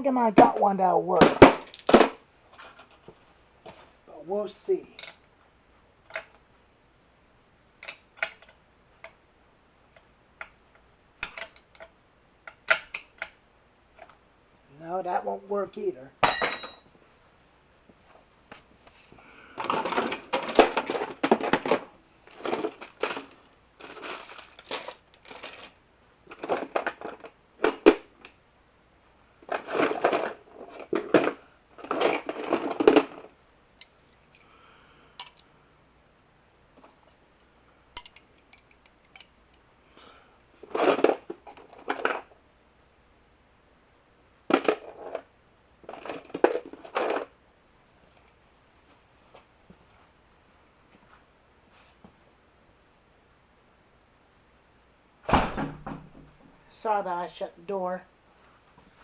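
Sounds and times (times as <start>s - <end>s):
metal hand tools clinking: 16.2s - 16.9s, 35.2s - 35.4s, 38.0s - 39.4s.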